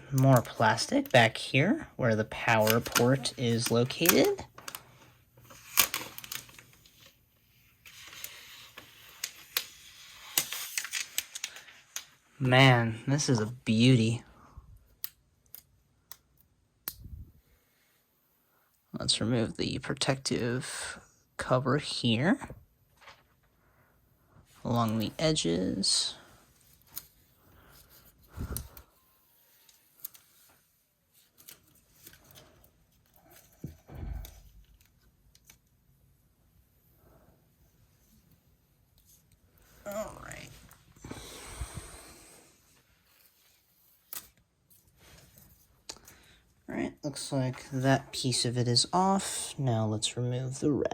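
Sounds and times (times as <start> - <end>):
plastic film crackling rustle: 2.3 - 12.2.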